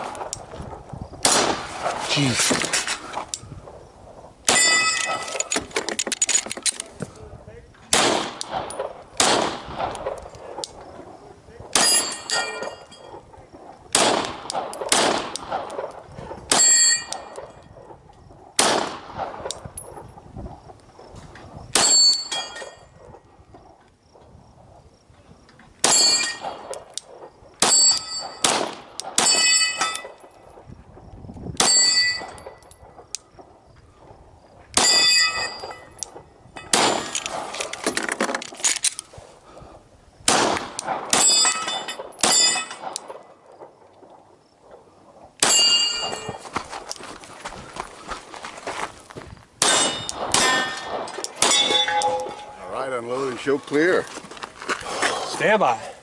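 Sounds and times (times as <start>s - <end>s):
rifle shots: 1.2s - 2.3s, 4.4s - 5.7s, 7.9s - 10.7s, 11.6s - 19.7s, 21.7s - 22.6s, 25.8s - 30.3s, 34.7s - 38.4s, 40.2s - 43.9s, 45.4s - 46.4s, 49.6s - 52.6s
steel plate clanging: 41.2s - 42.8s, 45.4s - 46.4s, 49.6s - 52.6s.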